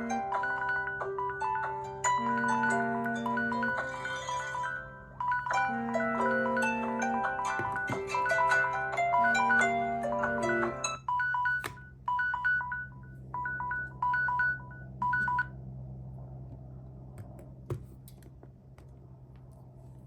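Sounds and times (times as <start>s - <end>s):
steady low hum: 7.7s - 20.0s.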